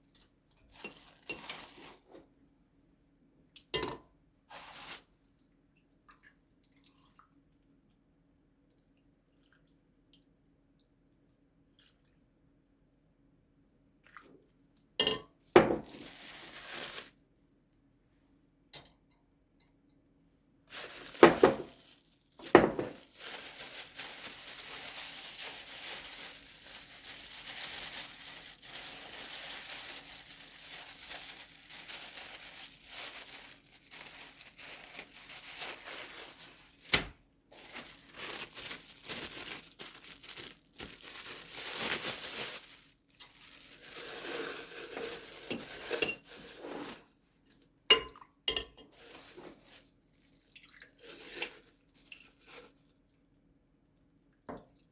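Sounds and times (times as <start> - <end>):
plastic crinkling and rustling: 0.1 - 2.4, 4.5 - 5.2, 15.6 - 17.2, 20.7 - 47.7, 48.9 - 53.1.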